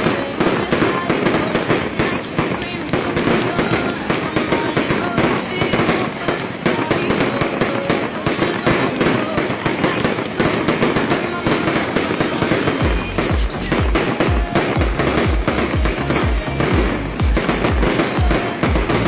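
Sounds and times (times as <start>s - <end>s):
fireworks crackling and banging: 0.0s - 19.0s
people's voices: 0.0s - 19.0s
music with pulsing bass beat: 12.5s - 19.0s.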